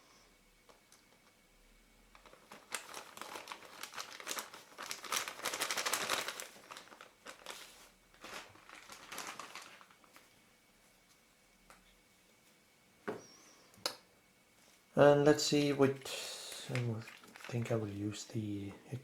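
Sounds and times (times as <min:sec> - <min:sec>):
wrapper crinkling: 0:02.1 - 0:10.3, 0:16.4 - 0:18.3.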